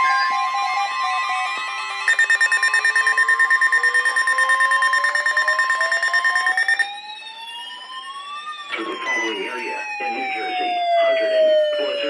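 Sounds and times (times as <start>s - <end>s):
steady electronic alert tone: 2.1s - 7.0s
rapid electronic beeping: 2.1s - 7.3s, 8.1s - 10.4s.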